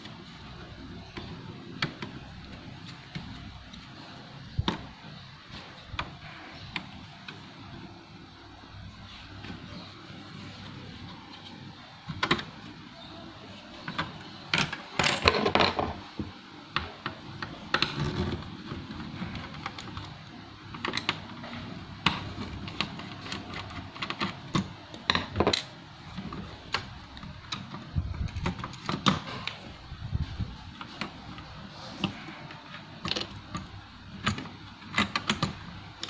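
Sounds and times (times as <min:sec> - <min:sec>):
laptop keys clicking: 0:33.1 - 0:35.7.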